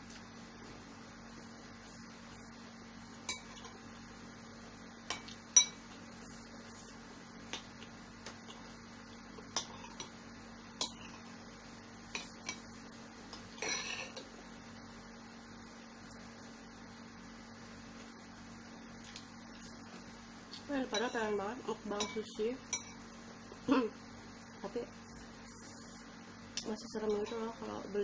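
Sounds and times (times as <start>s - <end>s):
cutlery clinking against a bowl: 5.1s - 5.8s, 13.6s - 14.3s, 22.0s - 23.1s, 27.0s - 27.5s.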